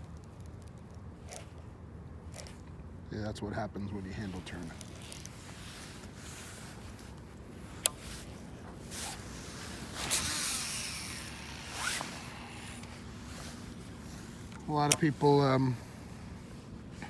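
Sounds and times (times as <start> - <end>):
reel spool whirring: 0.0 - 1.6, 2.2 - 2.7, 4.8 - 17.0
sharp click: 14.5 - 15.2.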